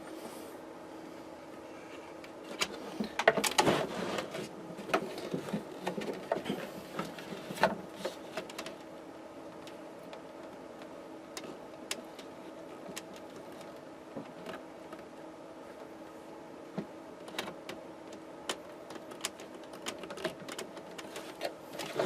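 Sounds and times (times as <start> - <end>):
faint steady hum: 0.0 - 22.0
wiring rustling: 1.8 - 8.9, 9.5 - 22.0.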